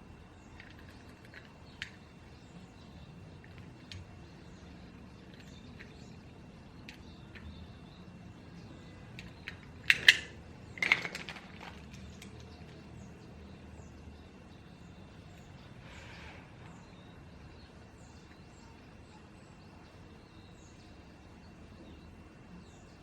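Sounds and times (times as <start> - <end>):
low room hum: 0.0 - 23.0
small hard objects clattering: 0.5 - 2.2, 8.9 - 13.0.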